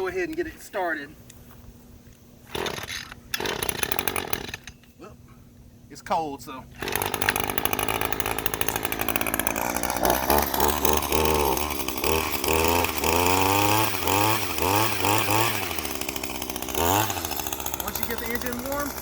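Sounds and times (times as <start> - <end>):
two-stroke engine revving: 2.5 - 4.5, 6.8 - 19.0.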